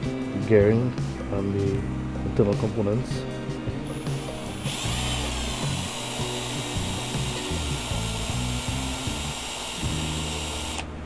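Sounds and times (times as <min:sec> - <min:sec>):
background music: 0:00.0 - 0:11.0
cordless drill whining: 0:03.8 - 0:11.0.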